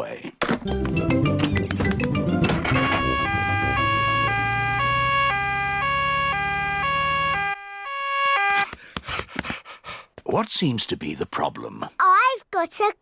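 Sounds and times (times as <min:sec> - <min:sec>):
cartoon two-tone siren: 0:02.5 - 0:08.7.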